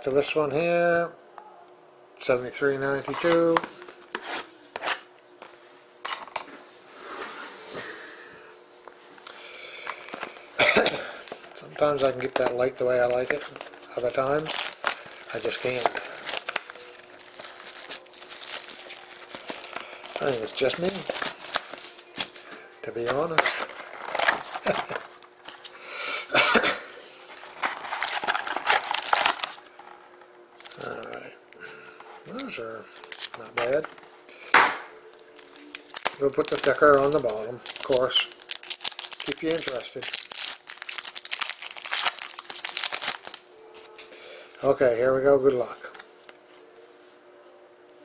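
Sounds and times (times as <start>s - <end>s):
trading cards and packaging rustling: 2.7s - 6.8s, 8.7s - 25.8s, 27.0s - 31.2s, 32.0s - 44.8s
man coughing: 10.6s - 11.2s, 26.3s - 26.9s.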